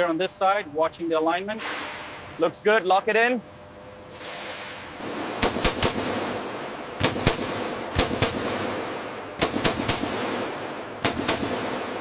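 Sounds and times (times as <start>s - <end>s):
steady hiss: 1.4s - 12.0s
loud sharp bangs: 4.1s - 12.0s.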